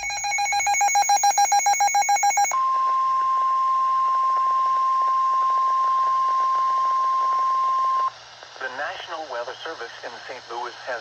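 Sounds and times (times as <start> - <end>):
fast pulsing electronic beep: 0.0 - 2.5
steady warning alarm tone: 0.0 - 2.8.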